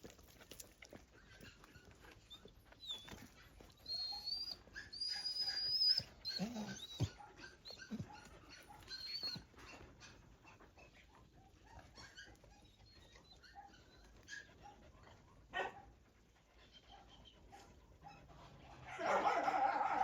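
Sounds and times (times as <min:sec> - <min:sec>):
dog whining: 0:02.2 - 0:10.7, 0:11.5 - 0:15.2
dog yelping: 0:02.8 - 0:10.2, 0:11.5 - 0:15.9, 0:18.9 - 0:20.0.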